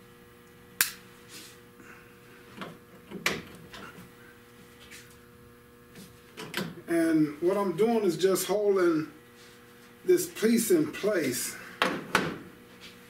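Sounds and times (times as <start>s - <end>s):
sharp click: 0.8s - 1.0s.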